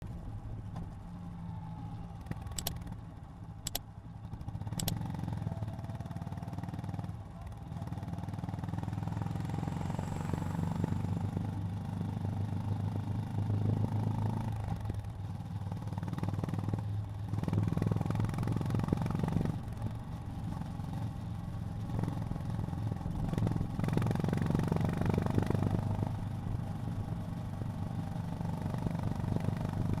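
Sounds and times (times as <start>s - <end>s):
motorcycle engine running: 2.1s - 30.0s
sharp clicks: 2.4s - 2.9s, 3.6s - 3.9s, 4.8s - 5.0s.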